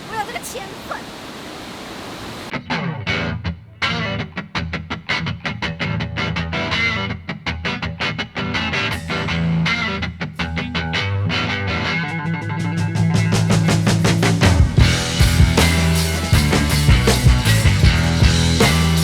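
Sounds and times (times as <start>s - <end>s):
upbeat strummed guitar music: 2.5s - 19.0s
bass line: 12.9s - 19.0s.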